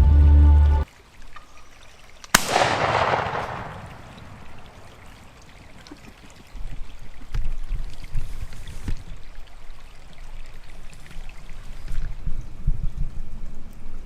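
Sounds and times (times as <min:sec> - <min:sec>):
wind buffeting microphone: 0:02.4 - 0:09.4, 0:11.6 - 0:14.0.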